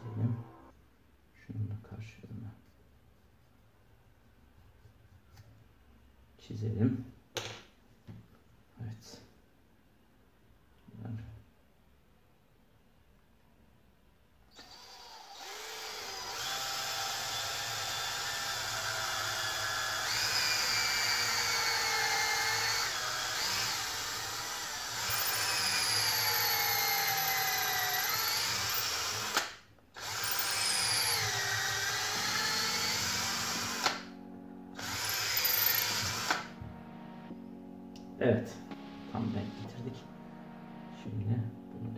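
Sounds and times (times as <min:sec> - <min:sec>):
electric drill boring into wood: 0:14.6 - 0:34.0, 0:34.8 - 0:36.5.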